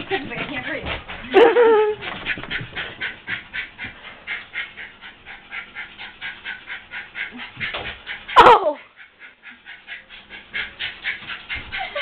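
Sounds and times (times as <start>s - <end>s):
dog panting hard: 0.0s - 12.0s.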